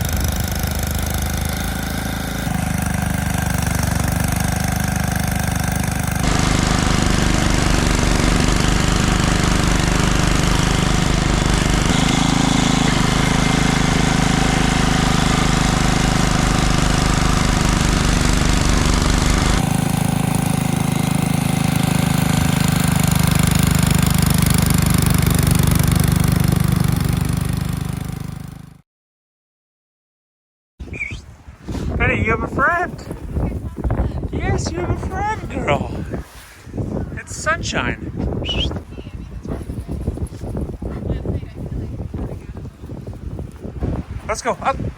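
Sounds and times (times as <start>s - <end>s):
snowblower engine chugging: 0.0s - 28.8s, 32.0s - 35.9s.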